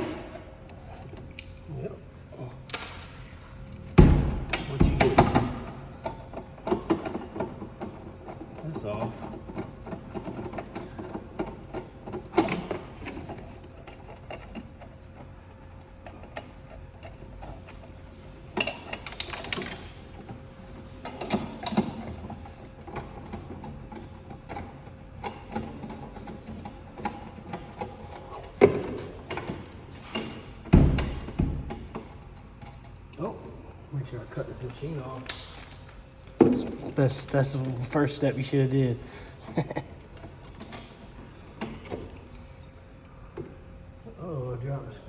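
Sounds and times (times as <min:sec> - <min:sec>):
metal parts clicking and knocking: 0:18.6 - 0:20.4.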